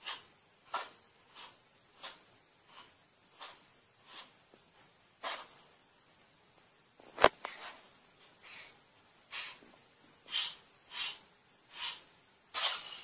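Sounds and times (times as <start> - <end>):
animal sneezing: 0.0 - 2.2, 5.2 - 5.6, 11.8 - 13.0
breathy snorts: 10.3 - 13.0.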